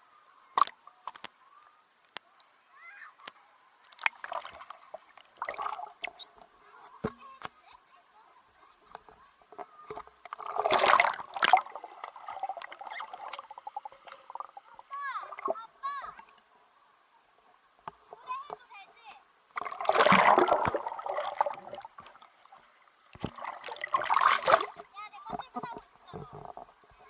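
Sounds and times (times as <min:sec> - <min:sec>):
water splashing and sloshing: 0:03.2 - 0:07.6, 0:08.6 - 0:16.5, 0:17.4 - 0:27.0.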